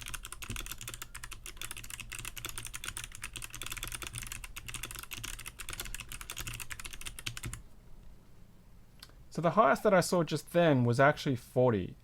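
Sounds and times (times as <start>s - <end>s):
fast mechanical keyboard typing: 0.0s - 7.6s.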